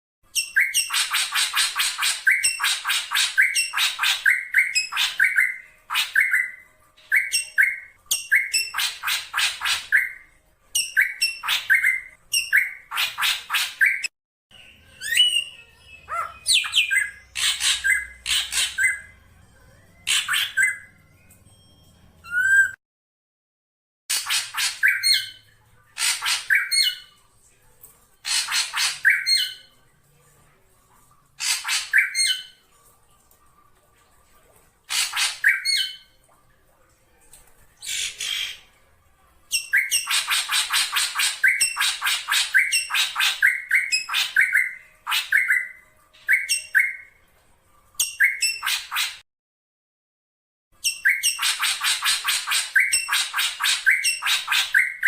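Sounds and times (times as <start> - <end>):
bird calling harsh and whistled notes: 0.3 - 10.2, 20.0 - 21.0, 22.2 - 22.8, 39.6 - 47.1, 50.8 - 55.0.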